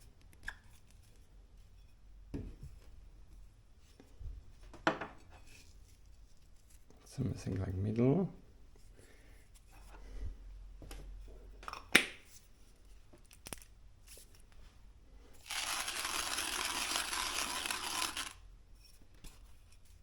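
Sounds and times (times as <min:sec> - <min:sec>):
gritty rustling of grinder: 0:15.4 - 0:18.4.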